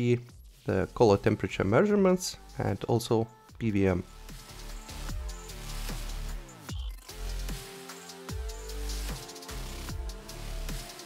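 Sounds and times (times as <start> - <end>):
electronic music with heavy bass: 3.4 - 11.0.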